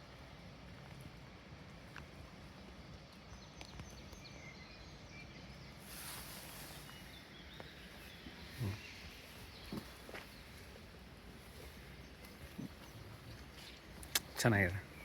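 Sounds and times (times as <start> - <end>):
faint bird chirps: 2.8 - 15.0
brief hiss: 5.8 - 7.1.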